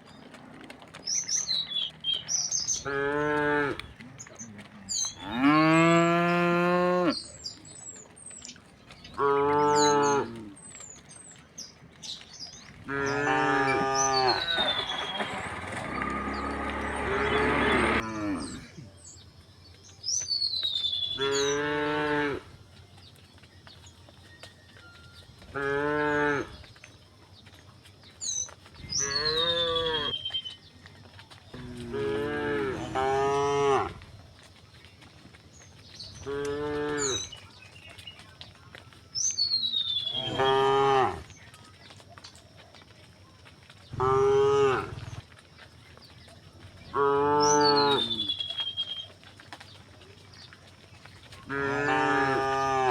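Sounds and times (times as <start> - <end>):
cows mooing: 2.7 - 7.3, 9.1 - 10.6, 12.8 - 18.8, 21.2 - 22.5, 25.5 - 26.6, 28.9 - 30.2, 31.6 - 34.0, 36.2 - 37.3, 40.1 - 41.3, 43.9 - 45.2, 46.9 - 48.4, 51.4 - 52.9.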